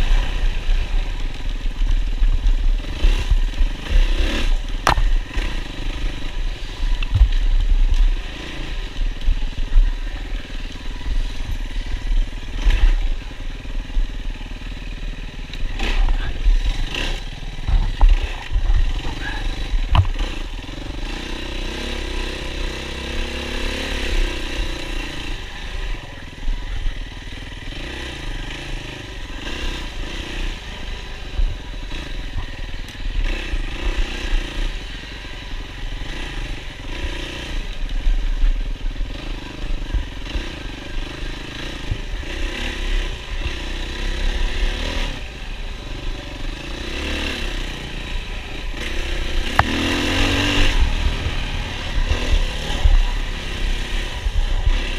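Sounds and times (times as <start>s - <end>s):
dirt bike engine revving: 0.0s - 54.9s.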